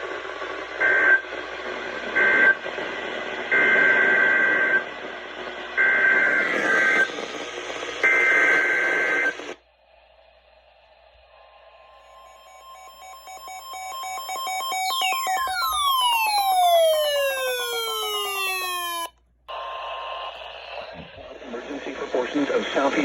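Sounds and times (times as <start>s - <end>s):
radio static hiss: 0.0s - 9.6s, 19.5s - 23.0s.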